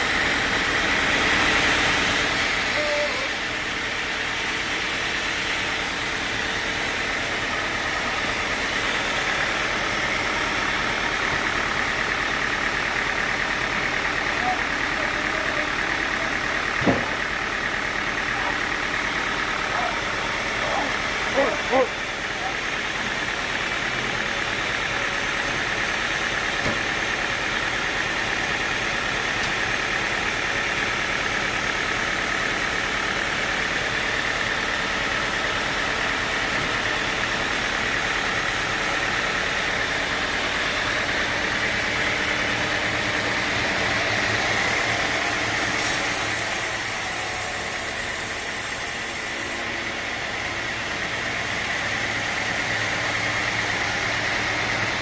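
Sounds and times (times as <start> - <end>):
saw running: 0.0 - 55.0
motor drone: 36.0 - 55.0.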